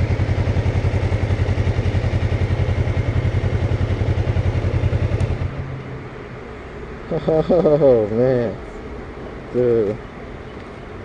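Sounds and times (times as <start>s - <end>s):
motorcycle engine idling: 0.0s - 5.6s.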